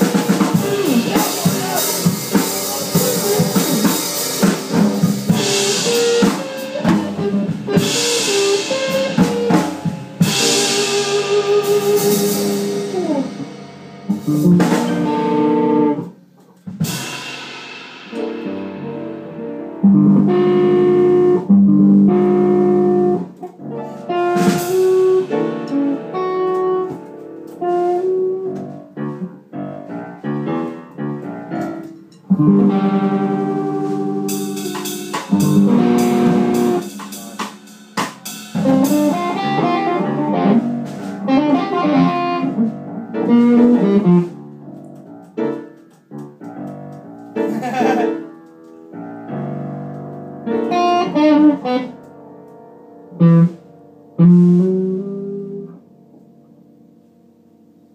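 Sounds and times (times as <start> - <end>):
electric guitar: 0.0 - 16.1, 38.6 - 45.6
drum kit: 0.0 - 52.0, 53.0 - 55.7.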